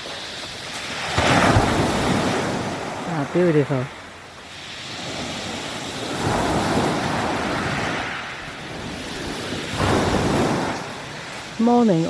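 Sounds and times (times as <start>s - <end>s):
waves breaking on shingle: 0.0s - 11.9s
wind on microphone: 4.5s - 12.0s.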